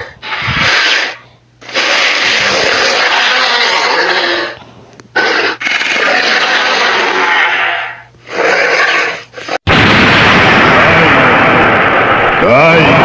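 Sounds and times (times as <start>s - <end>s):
loud sound effect: 9.7s - 13.0s.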